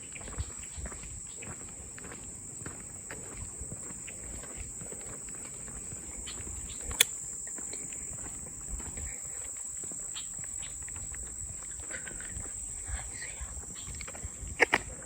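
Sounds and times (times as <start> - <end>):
footsteps on a path: 0.0 - 15.0
insect trilling: 3.2 - 15.0
sharp click: 6.9 - 7.2.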